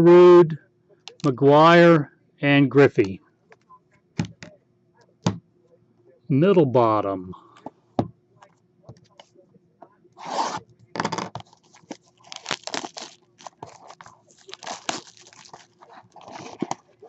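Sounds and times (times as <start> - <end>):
packaging tearing and crinkling: 10.4 - 16.9.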